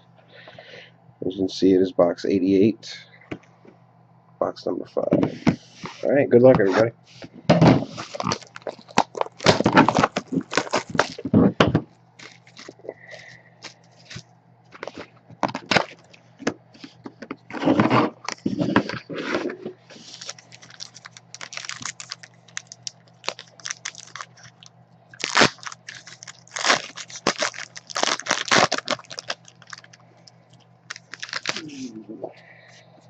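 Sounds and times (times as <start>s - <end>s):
low electrical hum: 0.0s - 33.0s
plastic wrap and cardboard tearing: 7.7s - 11.5s, 12.2s - 12.9s, 14.8s - 16.2s, 17.5s - 30.0s, 30.9s - 31.9s.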